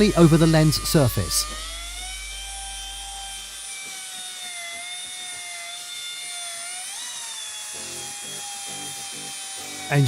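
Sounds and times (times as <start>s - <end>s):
electric drill sanding plastic: 0.0s - 10.0s.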